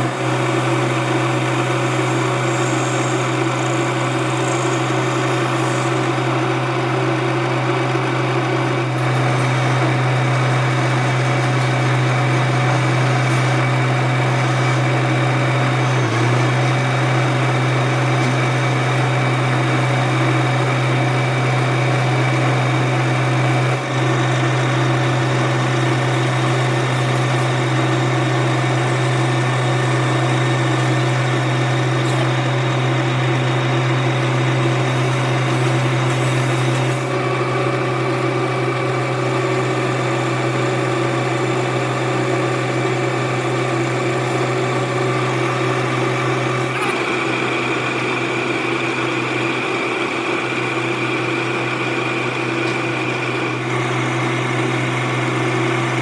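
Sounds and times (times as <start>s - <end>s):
workshop machinery humming: 0.0s - 56.0s.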